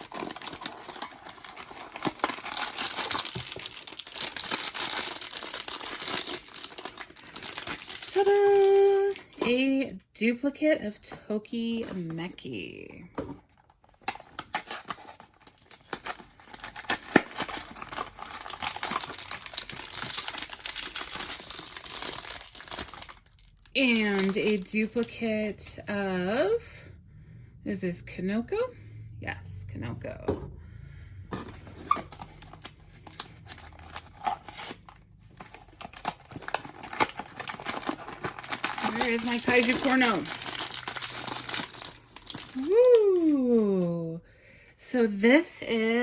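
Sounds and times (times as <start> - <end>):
packaging rustles and clicks: 0.0 - 9.5, 13.5 - 25.1, 31.4 - 43.0
wrapper crinkling and tearing: 0.0 - 9.5, 13.8 - 25.2, 31.6 - 43.6.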